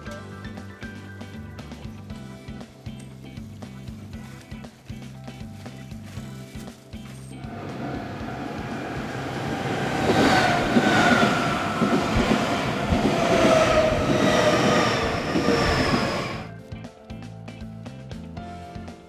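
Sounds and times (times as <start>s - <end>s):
train wheels clattering on rails: 7.5s - 16.5s
train whine falling in pitch: 7.5s - 16.5s.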